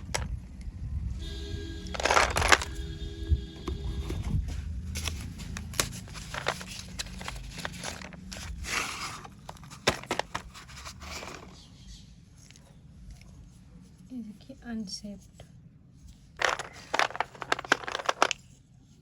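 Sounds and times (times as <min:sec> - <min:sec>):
packaging rustling and scraping: 0:01.9 - 0:02.9, 0:03.8 - 0:11.6, 0:16.1 - 0:19.0.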